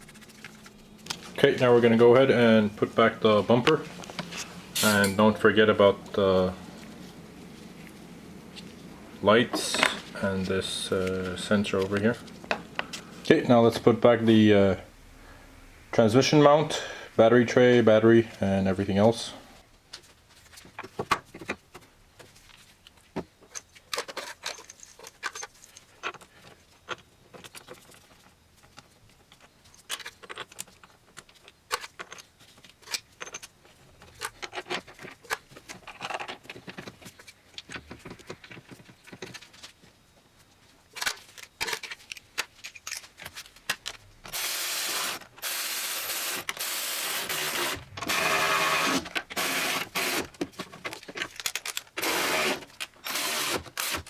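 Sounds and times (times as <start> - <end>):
metal tools clinking and scraping: 4.2 - 5.5, 23.5 - 26.2
cordless ratchet spinning bolts: 44.4 - 50.3.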